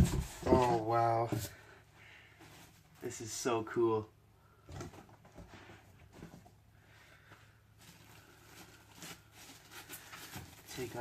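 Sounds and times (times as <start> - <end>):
styrofoam packing rustling: 7.7 - 11.0.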